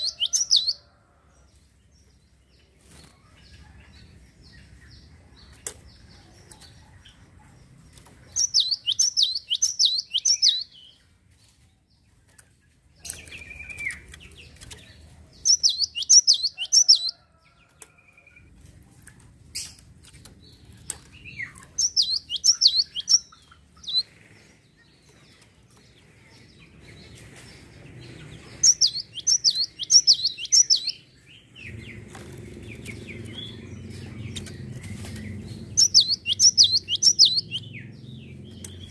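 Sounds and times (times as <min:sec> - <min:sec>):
sparrow chirping: 0:00.0 - 0:00.8, 0:03.0 - 0:11.0, 0:13.0 - 0:17.2, 0:20.4 - 0:25.4, 0:26.3 - 0:38.9.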